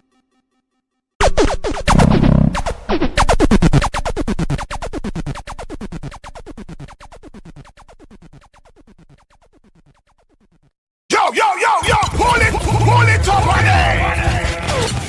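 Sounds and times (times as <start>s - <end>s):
echoing electronic zaps: 1.9s - 3.1s.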